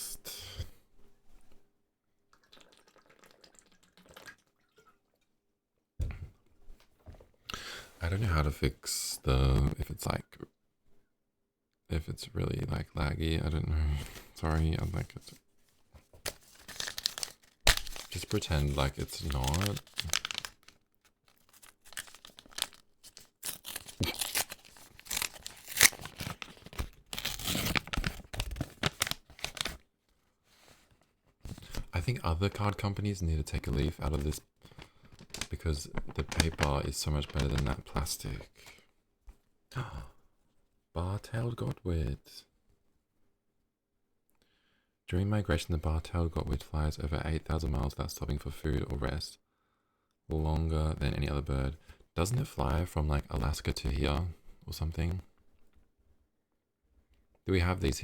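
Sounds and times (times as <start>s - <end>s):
paper cards rustling: 16.0s - 29.8s, 34.2s - 38.4s.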